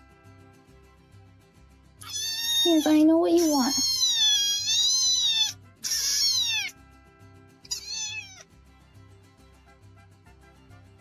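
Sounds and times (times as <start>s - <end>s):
cat meowing: 2.0s - 6.8s, 7.7s - 8.5s.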